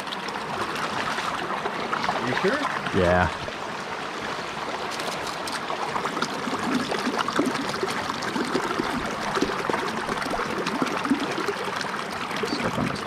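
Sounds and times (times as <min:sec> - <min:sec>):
creek babbling over rocks: 0:00.0 - 0:13.0.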